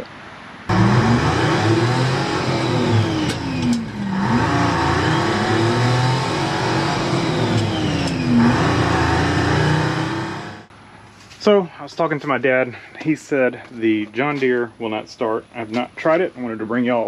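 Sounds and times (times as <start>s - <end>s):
car engine revving: 0.7s - 10.7s.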